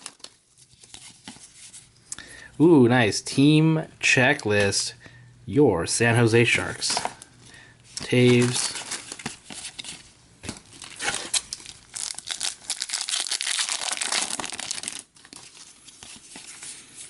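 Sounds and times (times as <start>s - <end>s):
wrapper tearing and crinkling: 10.6s - 16.3s.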